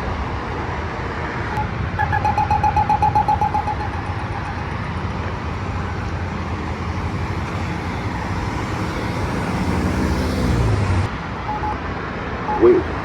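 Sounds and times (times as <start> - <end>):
road traffic noise: 0.0 - 13.0
passing vehicle engine: 2.2 - 11.7.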